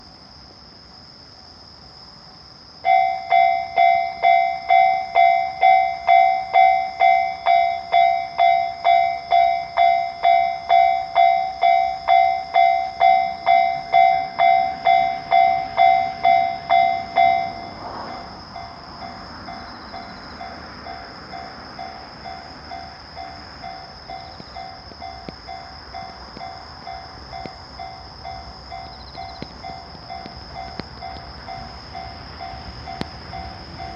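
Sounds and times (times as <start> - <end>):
bell dinging: 2.9 - 18.8.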